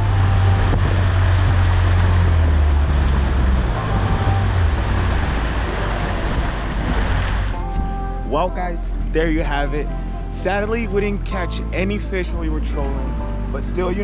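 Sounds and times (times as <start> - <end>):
wind and water rushing: 0.0 - 8.0
boat engine rumble: 0.0 - 14.0.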